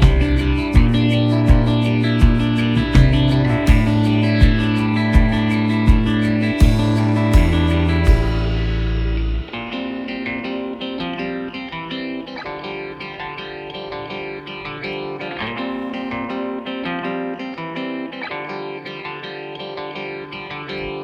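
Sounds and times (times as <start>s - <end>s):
music of quick plucked notes: 0.0s - 16.6s.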